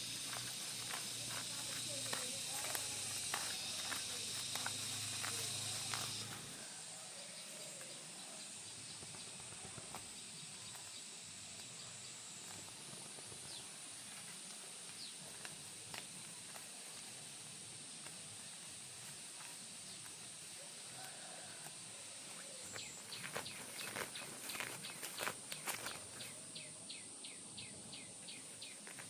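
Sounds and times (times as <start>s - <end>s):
high-pitched insect drone: 0.0s - 29.0s.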